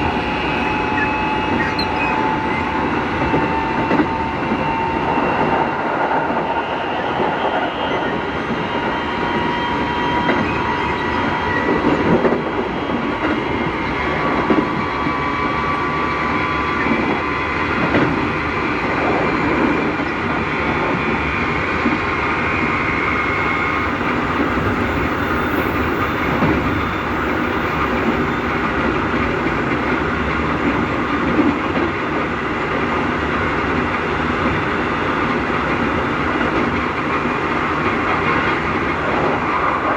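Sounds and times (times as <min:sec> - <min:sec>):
traction motor whine: 0:00.0 - 0:05.5
train rolling noise and wheel clatter: 0:00.0 - 0:39.9.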